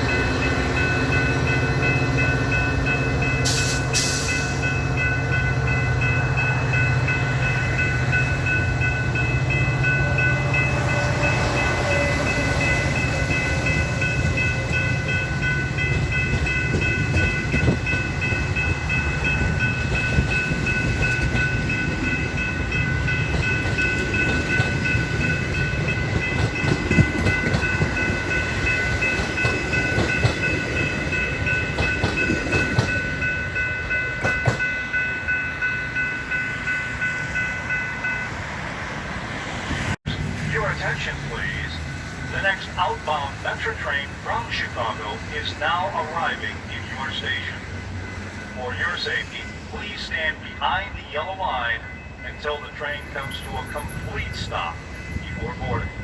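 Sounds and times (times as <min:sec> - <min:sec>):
locomotive hum: 0:00.0 - 0:56.0
train wheels on rail: 0:00.0 - 0:56.0.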